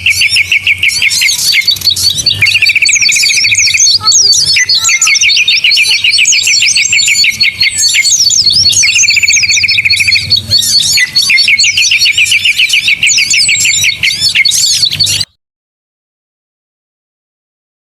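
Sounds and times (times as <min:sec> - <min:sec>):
songbirds chirping and twittering: 0:00.0 - 0:15.3
fast even bird trill: 0:00.0 - 0:15.4.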